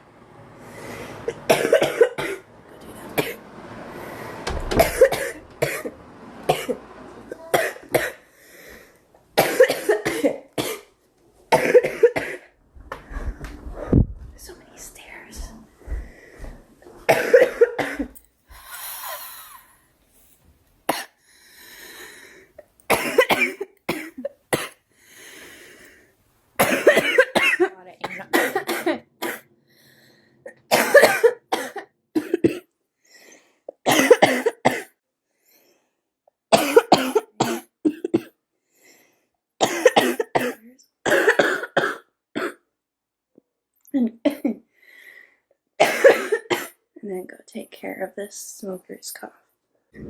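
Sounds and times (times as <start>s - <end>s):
breathy inhales: 0.6s - 1.4s, 8.2s - 9.0s, 15.9s - 16.6s, 18.5s - 20.0s, 21.2s - 22.6s, 24.9s - 26.2s, 29.6s - 30.4s, 38.7s - 39.4s, 44.7s - 45.5s
woman coughing: 1.5s - 2.5s, 4.8s - 5.9s, 6.5s - 8.2s, 9.4s - 10.9s, 11.5s - 12.5s, 17.1s - 18.1s, 22.9s - 24.8s, 26.6s - 29.5s, 30.5s - 32.7s, 33.8s - 35.0s, 36.5s - 38.4s, 39.6s - 42.6s, 44.2s - 44.6s, 45.8s - 46.8s.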